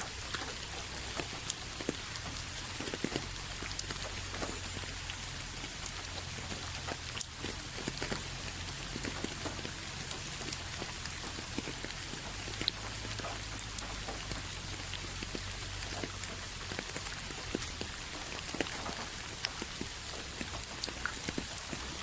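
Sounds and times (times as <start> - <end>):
raindrops pattering: 0.0 - 22.0.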